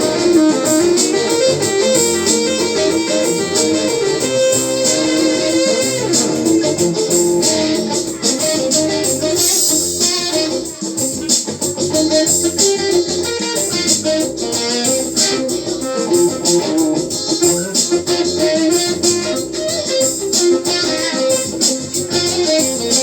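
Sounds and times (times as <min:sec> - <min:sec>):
plucked guitar-like instrumental music: 0:00.0 - 0:23.0.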